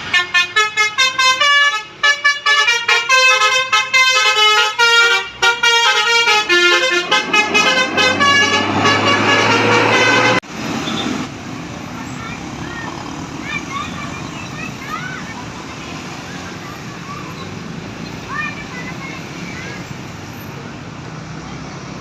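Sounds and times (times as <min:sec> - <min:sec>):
musical air horn tune: 0:00.0 - 0:10.4
bus engine noise: 0:00.0 - 0:22.0.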